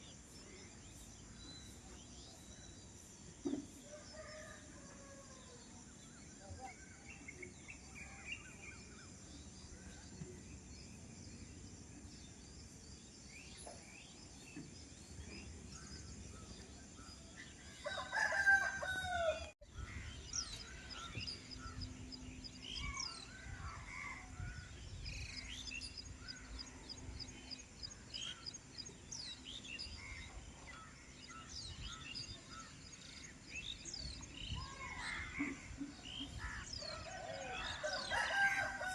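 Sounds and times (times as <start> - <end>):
songbirds chirping: 0.0 - 38.9
rooster crowing: 17.8 - 19.6, 36.8 - 38.9.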